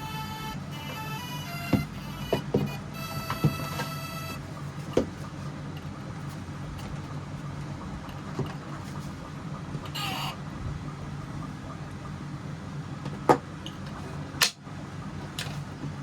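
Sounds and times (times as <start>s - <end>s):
low mechanical hum: 0.0s - 16.0s.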